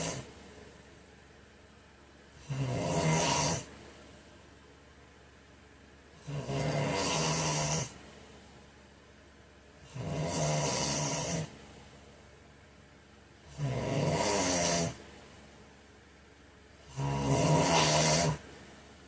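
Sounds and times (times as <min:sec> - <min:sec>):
man snoring: 0:00.0 - 0:00.3, 0:02.4 - 0:03.7, 0:06.2 - 0:08.0, 0:09.9 - 0:11.5, 0:13.5 - 0:15.0, 0:16.8 - 0:18.4
quiet breathing: 0:00.0 - 0:01.0.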